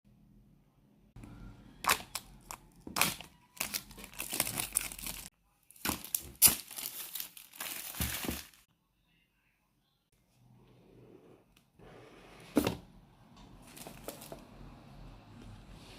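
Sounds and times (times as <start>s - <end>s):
packaging crinkling and tearing: 1.8s - 8.7s.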